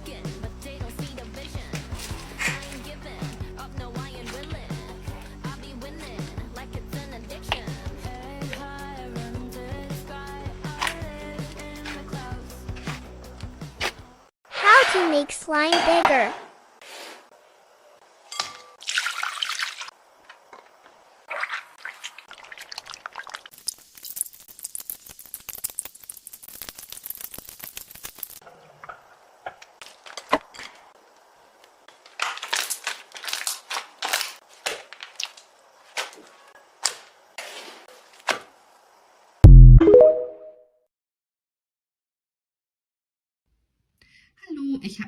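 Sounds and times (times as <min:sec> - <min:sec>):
crackling slime: 0:23.5 - 0:28.4, 0:31.9 - 0:37.0.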